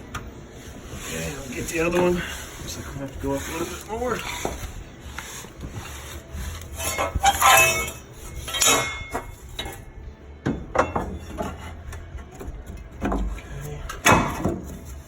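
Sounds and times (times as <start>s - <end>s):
metal tank scraping against frame: 0.9s - 9.9s.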